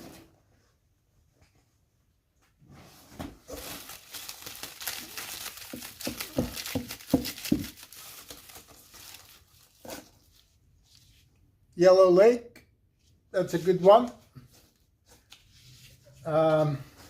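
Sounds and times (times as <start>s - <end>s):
packing material rustling: 3.5s - 11.2s.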